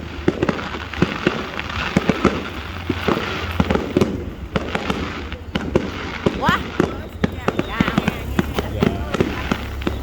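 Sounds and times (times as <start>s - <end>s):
fireworks bangs: 0.0s - 10.0s
fireworks crackling: 0.0s - 10.0s.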